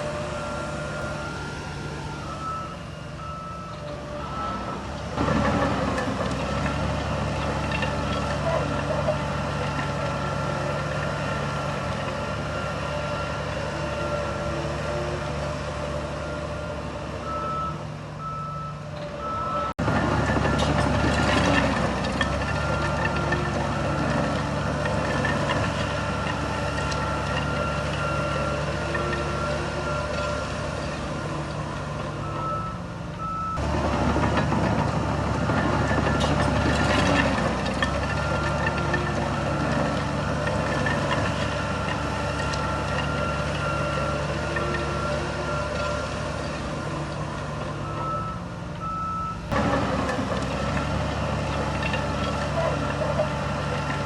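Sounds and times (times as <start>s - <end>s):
reversing alarm beeping: 0.0s - 5.0s, 16.0s - 19.7s, 25.2s - 30.5s, 32.2s - 33.7s, 38.0s - 46.2s, 47.7s - 49.6s
diesel machine engine running: 0.0s - 54.0s.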